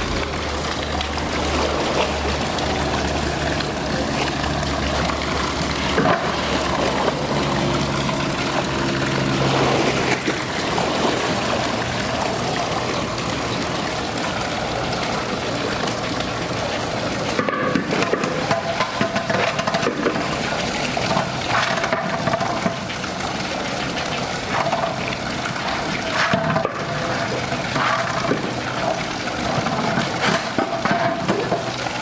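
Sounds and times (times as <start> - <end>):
water rushing: 0.0 - 32.0.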